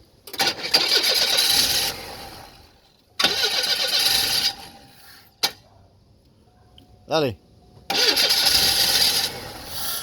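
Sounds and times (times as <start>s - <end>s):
car engine cranking on starter: 0.2s - 4.9s, 7.8s - 10.0s.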